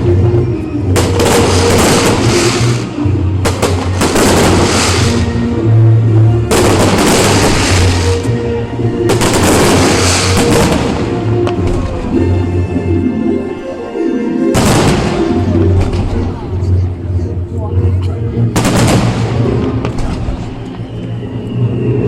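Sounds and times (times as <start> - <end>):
fireworks crackling: 0.9 - 5.6, 6.4 - 12.2, 18.6 - 21.0.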